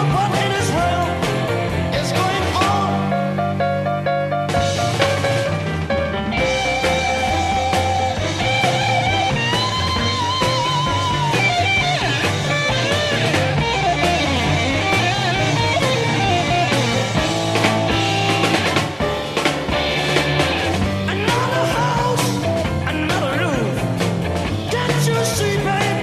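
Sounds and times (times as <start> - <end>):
bass: 0.0 - 26.0
drums: 0.0 - 26.0
lead guitar bending notes: 4.6 - 21.1.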